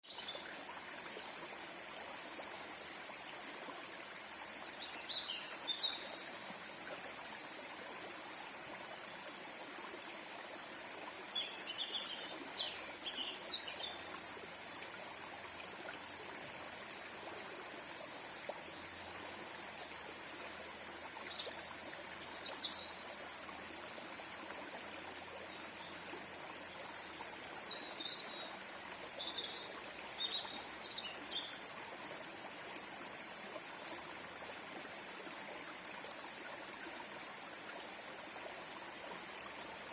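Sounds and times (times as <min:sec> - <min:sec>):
small stream flowing: 0:00.0 - 0:39.9
songbird singing: 0:04.8 - 0:06.3, 0:10.8 - 0:14.2, 0:21.1 - 0:23.2, 0:27.6 - 0:31.6.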